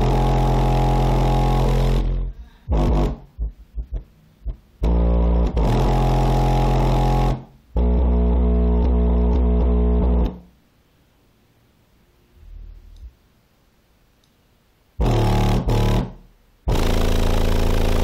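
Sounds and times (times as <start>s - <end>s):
bass-heavy music through subwoofer: 0.0s - 10.4s, 15.0s - 18.0s.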